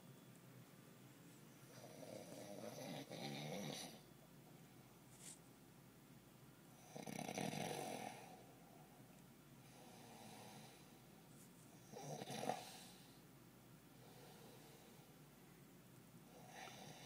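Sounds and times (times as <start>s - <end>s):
man snoring: 1.8s - 4.0s, 6.8s - 8.4s, 11.9s - 13.0s.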